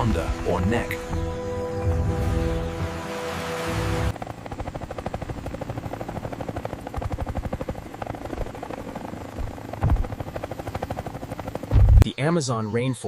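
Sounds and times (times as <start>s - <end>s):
music: 0.0s - 4.1s
helicopter rotor chopping: 3.8s - 12.0s.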